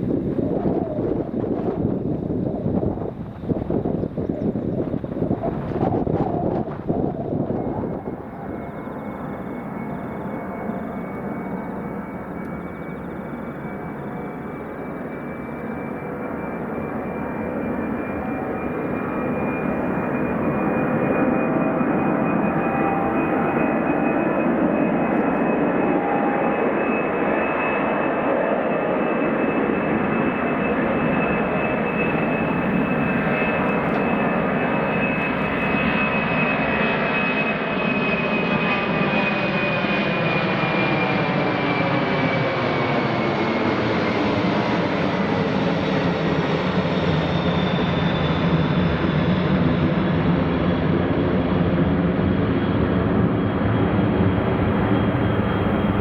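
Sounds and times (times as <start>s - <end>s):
high fan whine: 0.0s - 27.7s, 28.5s - 36.8s, 52.9s - 56.0s
jet engines at takeoff thrust: 0.0s - 56.0s.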